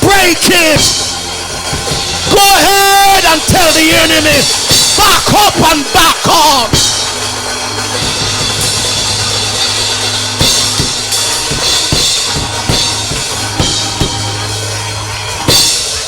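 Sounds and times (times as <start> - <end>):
crashing cymbal hit: 0.0 - 5.6, 6.4 - 16.0
bass drum and snare hits: 0.0 - 14.8.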